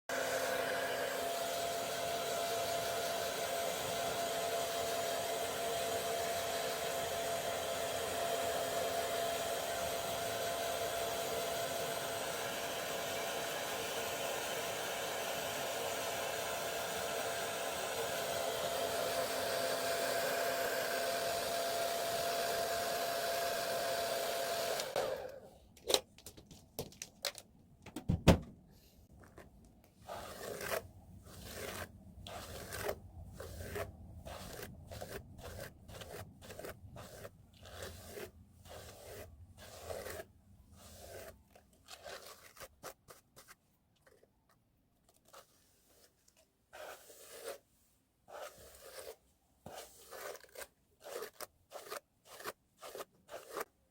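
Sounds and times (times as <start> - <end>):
hair dryer whining: 0.1 - 25.5.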